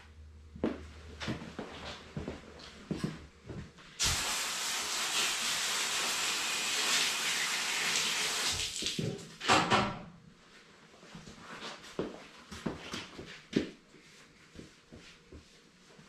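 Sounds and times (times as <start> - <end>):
rushing air or spray hiss: 4.0 - 8.5.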